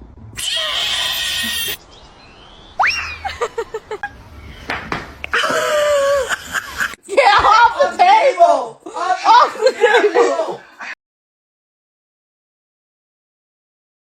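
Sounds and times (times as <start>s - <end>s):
cat crying: 0.4s - 1.8s
cat hissing: 0.4s - 1.8s
cat yowling: 0.4s - 1.8s.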